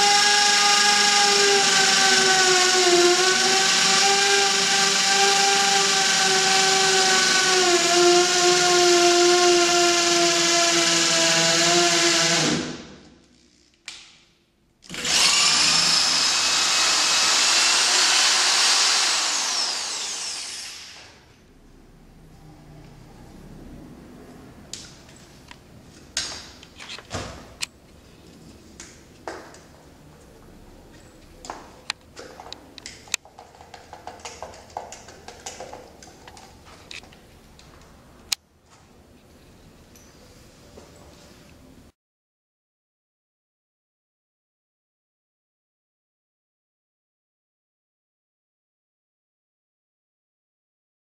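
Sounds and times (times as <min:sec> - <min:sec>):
electric drill running: 0:14.8 - 0:21.2.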